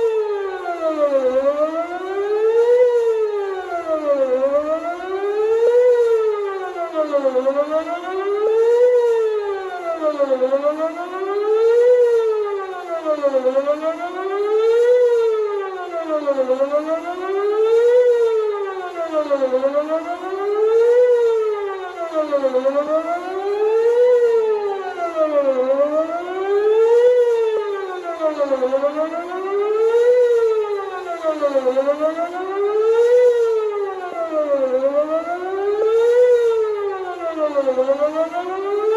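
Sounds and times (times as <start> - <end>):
warning siren wailing: 0.0 - 38.9.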